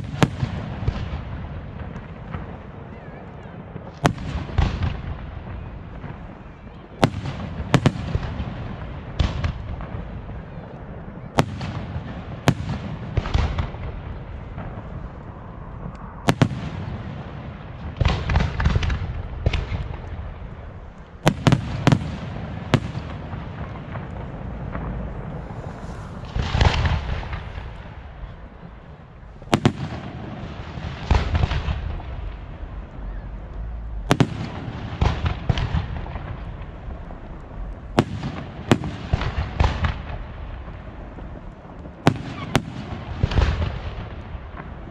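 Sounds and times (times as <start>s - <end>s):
steady rumble and echo: 0.0s - 43.2s
crackling reports: 22.7s - 29.6s.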